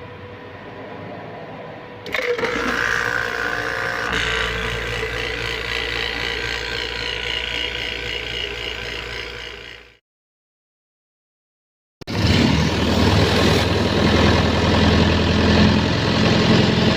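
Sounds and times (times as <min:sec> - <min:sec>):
vacuum pump humming: 0:01.7 - 0:10.0.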